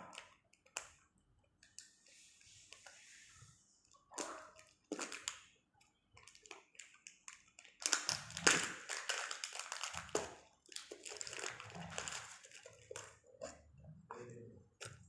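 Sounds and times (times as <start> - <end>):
packaging rustling and crackling: 6.2 - 13.3.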